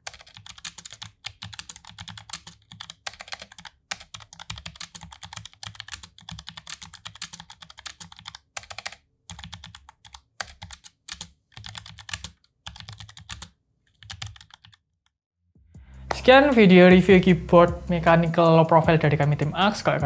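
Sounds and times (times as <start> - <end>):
mechanical keyboard typing: 0.0 - 14.8.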